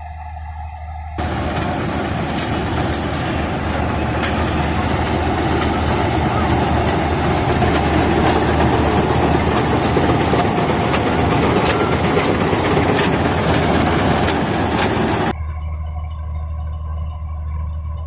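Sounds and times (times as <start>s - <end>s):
combine harvester rumbling: 1.2s - 15.3s
machinery clicks and rattles: 1.2s - 15.3s.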